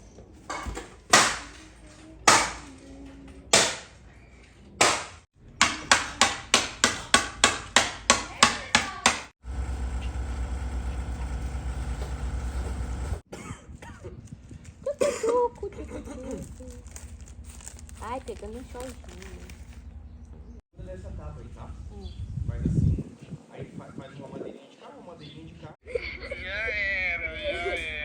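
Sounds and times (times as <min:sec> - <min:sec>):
hammer striking wood: 0:00.6 - 0:01.5, 0:02.3 - 0:02.6, 0:03.5 - 0:03.9, 0:04.8 - 0:09.3
pulsing machine running: 0:09.4 - 0:13.2.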